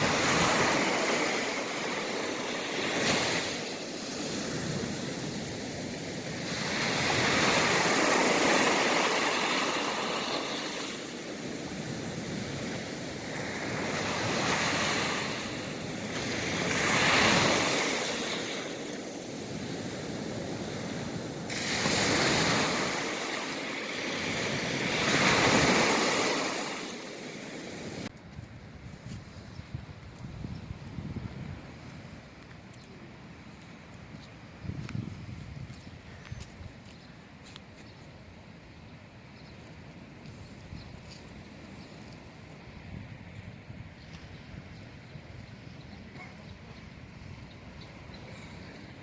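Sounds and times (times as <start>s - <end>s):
sea waves breaking on shore: 0.0s - 28.1s.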